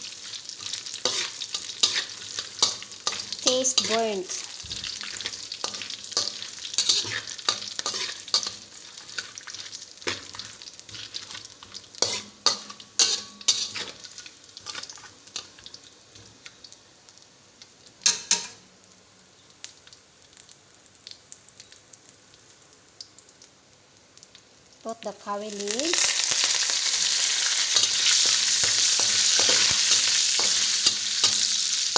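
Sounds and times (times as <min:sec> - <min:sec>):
spices sizzling in oil: 0:00.0 - 0:31.9
utensil scraping a pan: 0:01.0 - 0:04.1, 0:05.2 - 0:09.2, 0:12.0 - 0:14.0, 0:27.7 - 0:31.6.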